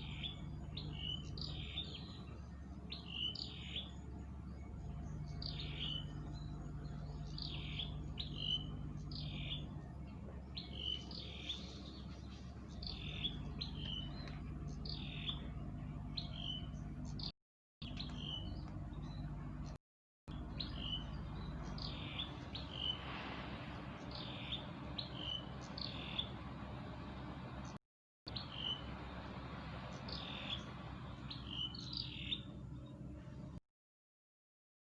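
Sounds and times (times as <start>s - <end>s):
bird chirping: 0.0s - 23.2s, 24.0s - 26.4s, 27.6s - 29.3s, 29.9s - 33.4s
low background rumble: 0.0s - 33.6s.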